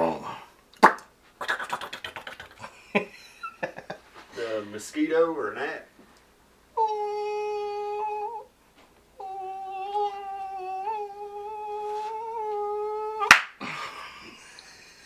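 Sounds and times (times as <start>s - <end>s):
sharp slap: 0.8s - 2.6s, 13.2s - 13.6s
man imitating mosquito whine: 6.8s - 8.5s, 9.2s - 13.3s.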